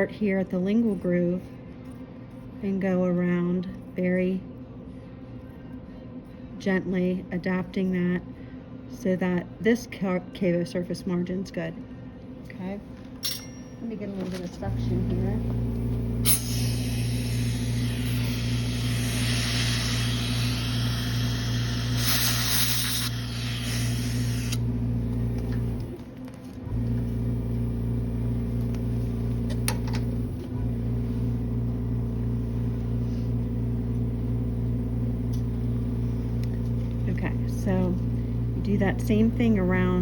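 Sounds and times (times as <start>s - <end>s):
suction motor hum: 14.7s - 26.0s, 26.6s - 40.0s
air hiss through suction tip: 16.2s - 24.6s.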